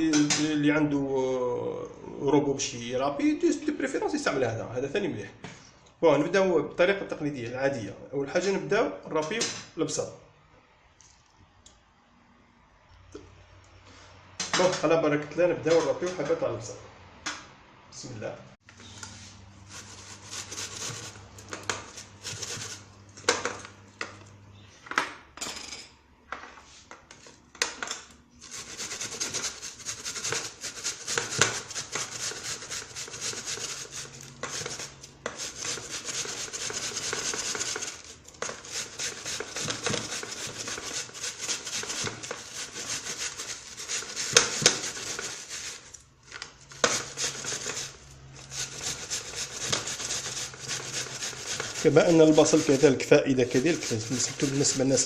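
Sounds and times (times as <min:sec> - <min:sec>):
onion rasping on a grater: 0:19.6 - 0:23.0, 0:28.4 - 0:46.0, 0:46.6 - 0:55.0.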